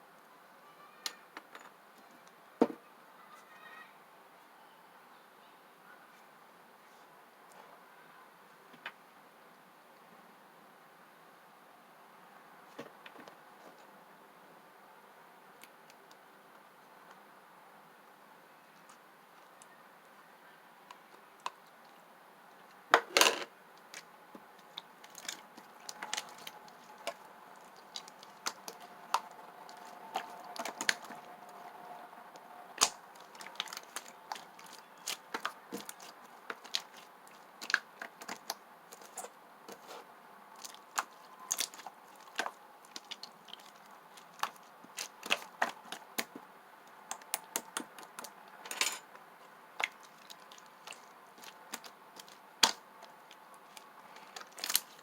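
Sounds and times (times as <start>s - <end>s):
slime clicking and popping: 32.8s - 37.0s.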